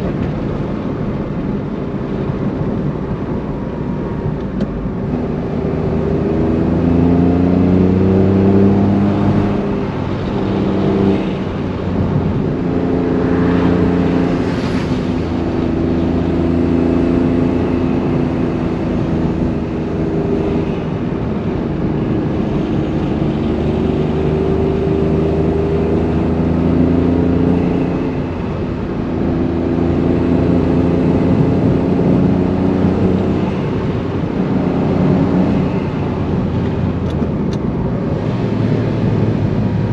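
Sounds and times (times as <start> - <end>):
car engine and exhaust under load: 0.0 - 39.9.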